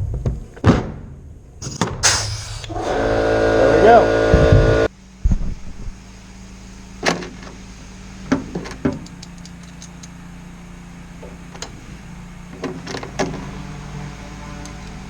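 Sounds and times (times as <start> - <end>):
steady low hum: 2.3 - 7.0.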